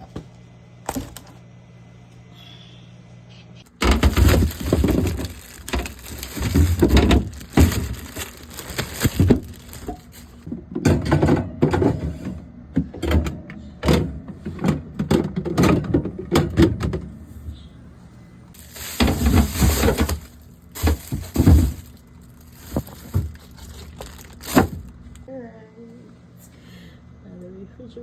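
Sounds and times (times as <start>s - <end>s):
containers clattering in refrigerator: 0.9s - 1.4s, 3.7s - 17.2s, 18.6s - 25.2s.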